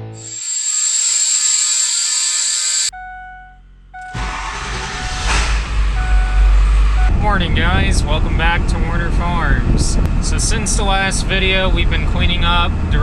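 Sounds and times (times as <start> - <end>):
high hiss: 0.0 - 2.9
vehicle running rumble: 3.6 - 13.0.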